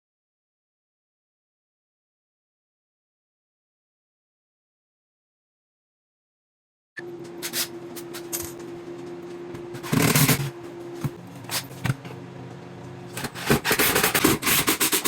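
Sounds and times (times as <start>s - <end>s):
steady low hum: 7.0s - 15.0s.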